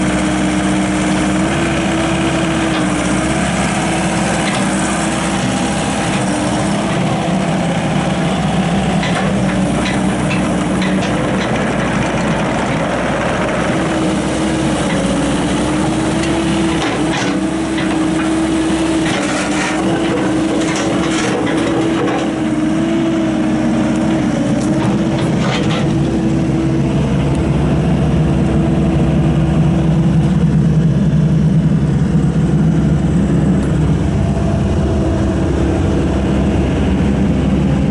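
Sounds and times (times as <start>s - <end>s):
excavator diesel engine running: 0.0s - 37.9s
knocks and crackles: 19.0s - 22.4s.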